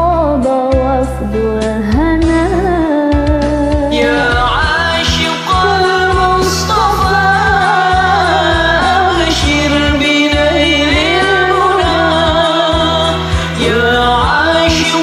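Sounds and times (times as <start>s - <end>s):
backing music with steady beat: 0.0s - 15.0s
person singing ornamented melody: 3.9s - 15.0s.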